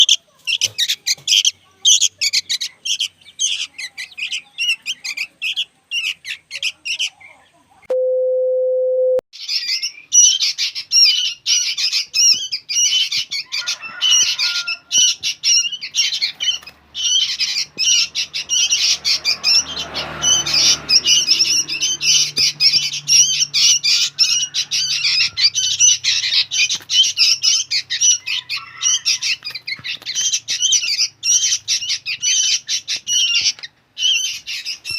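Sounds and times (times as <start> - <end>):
young birds chirping noisily: 0.0 - 7.9, 9.4 - 34.9.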